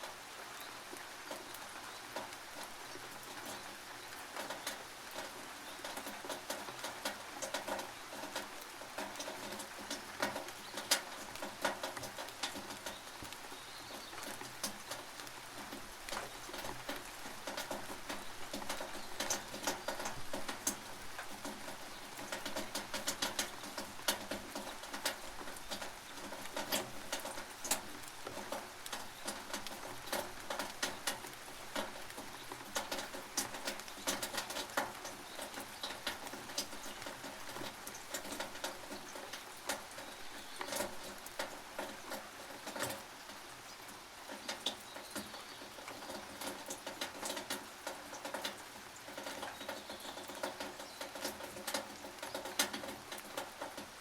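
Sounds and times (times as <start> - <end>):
rain drops ticking on tin roof: 0.0 - 54.0
steady hiss of rain: 0.0 - 54.0.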